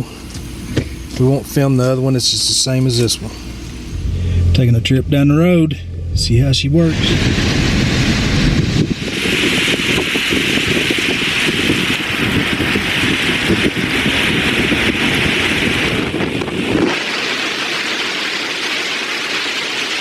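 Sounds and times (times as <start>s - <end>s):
wind rumbling on microphone: 3.2s - 18.4s
car driving on road: 3.5s - 10.0s.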